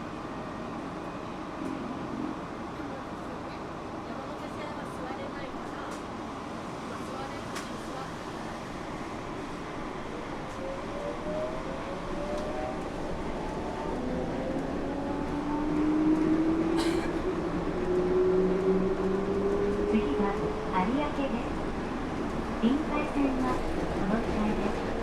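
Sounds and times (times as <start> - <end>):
train running rumble: 11.2 - 25.0.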